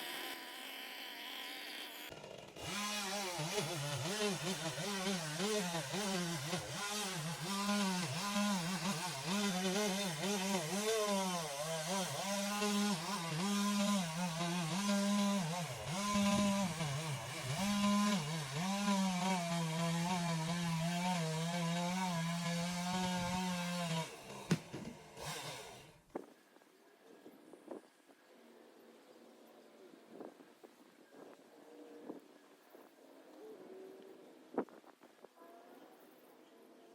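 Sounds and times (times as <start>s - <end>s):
chainsaw cutting wood: 0.0s - 26.3s.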